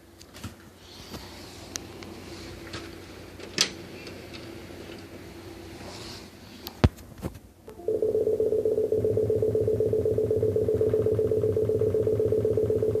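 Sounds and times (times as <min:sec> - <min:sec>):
rapidly pulsing electronic beeping: 0:07.8 - 0:13.0.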